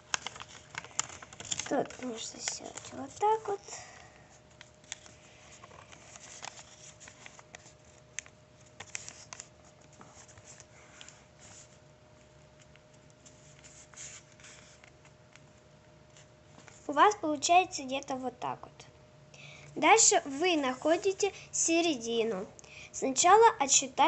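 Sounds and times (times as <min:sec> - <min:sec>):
paper rustling while folded: 0:00.0 - 0:17.0, 0:20.0 - 0:22.1
thin steady hum: 0:00.0 - 0:24.0.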